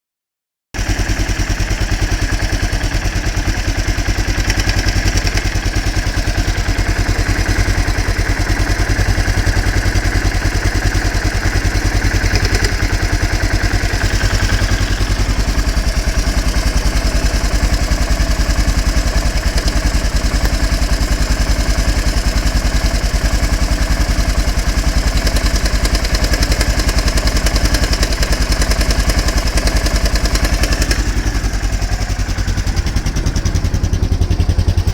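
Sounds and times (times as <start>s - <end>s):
motorcycle engine idling: 0.8s - 34.9s
mechanical noise in engine: 4.4s - 19.8s.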